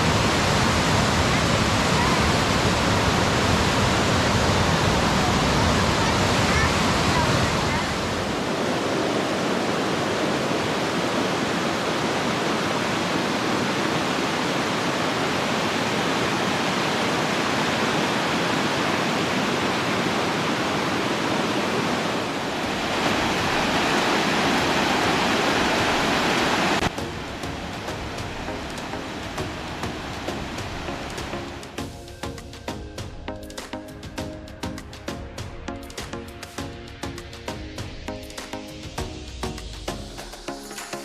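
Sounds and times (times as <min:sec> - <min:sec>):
water rushing over rocks: 0:00.0 - 0:31.8.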